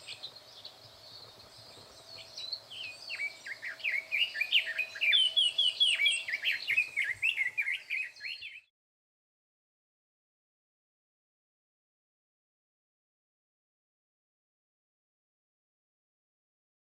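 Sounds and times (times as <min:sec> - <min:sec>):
bird warbling song: 0:00.0 - 0:08.7.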